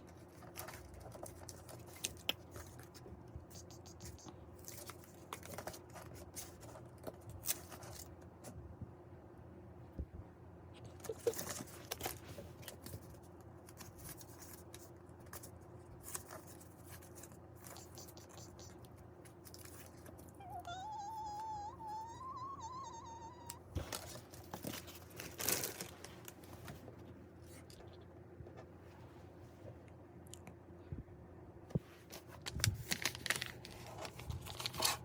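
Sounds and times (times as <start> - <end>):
paper and plastic crinkling: 0.1 - 3.0, 4.6 - 8.1, 11.0 - 17.9, 23.7 - 27.8, 32.1 - 35.0
wavering high tone: 20.4 - 23.6.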